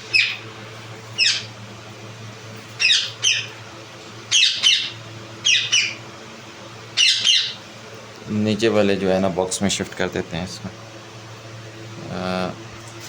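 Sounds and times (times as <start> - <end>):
parakeet squawking: 0.0 - 0.4, 1.1 - 1.6, 2.8 - 3.6, 4.3 - 6.0, 6.9 - 7.6.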